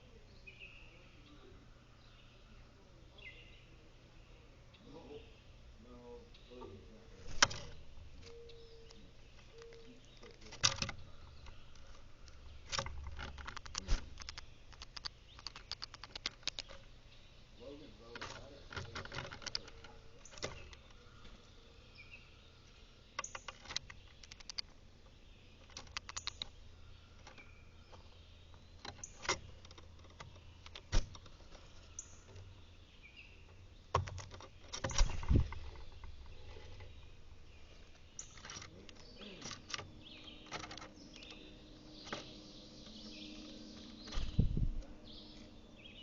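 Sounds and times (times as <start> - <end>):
birds chirping: 0.0 - 46.0
sharp taps and clicks: 12.7 - 16.8, 23.2 - 24.7, 25.6 - 26.5.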